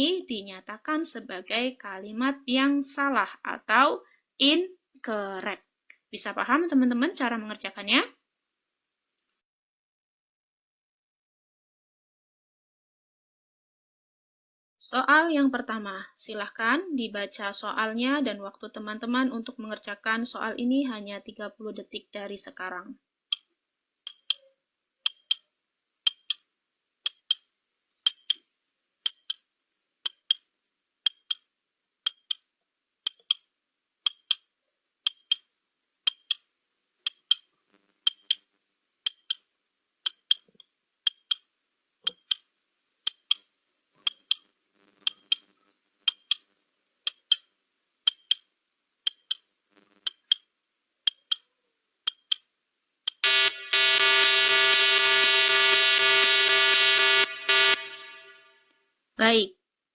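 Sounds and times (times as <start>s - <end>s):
countdown timer ticking: 24.1s - 25.4s, 26.1s - 26.4s, 27.0s - 27.4s, 28.0s - 28.4s, 29.0s - 29.4s, 30.1s - 30.4s, 31.1s - 31.4s, 32.1s - 32.4s, 33.1s - 33.4s, 34.1s - 34.4s, 35.1s - 35.4s, 36.1s - 36.4s, 37.1s - 37.4s, 38.0s - 38.4s, 39.1s - 39.4s, 40.0s - 40.4s, 41.0s - 41.4s, 42.0s - 42.4s, 43.1s - 43.4s, 44.0s - 44.4s, 45.0s - 45.4s, 46.1s - 46.4s, 47.1s - 47.4s, 48.1s - 48.4s, 49.1s - 49.4s, 50.1s - 50.4s, 51.1s - 51.4s, 52.1s - 52.4s, 53.1s - 54.6s.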